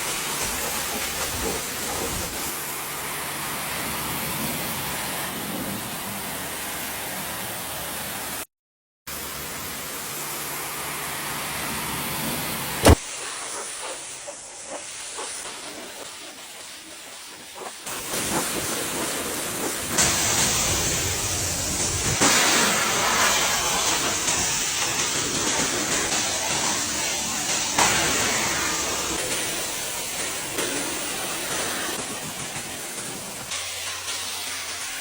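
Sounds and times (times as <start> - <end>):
high-pressure jet hissing: 0.0 - 6.9, 9.2 - 35.0.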